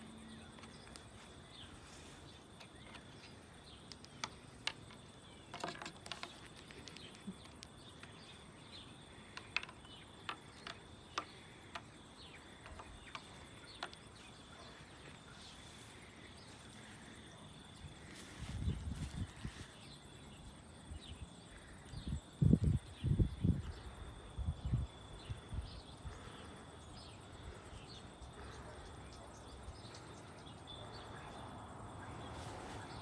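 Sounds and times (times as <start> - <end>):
light clicks and taps: 9.3 - 11.9.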